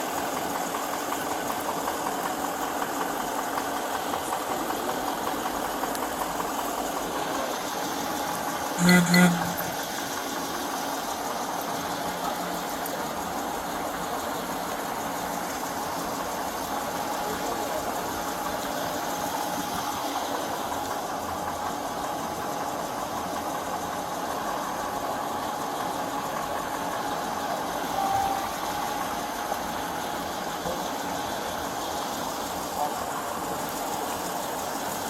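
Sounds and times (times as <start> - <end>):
short beep: 8.8 - 9.8, 27.9 - 29.2.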